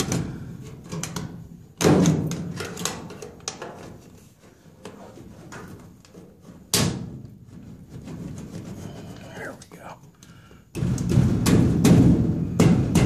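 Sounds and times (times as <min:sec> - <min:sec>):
loud sheet metal clank: 0:10.8 - 0:13.0.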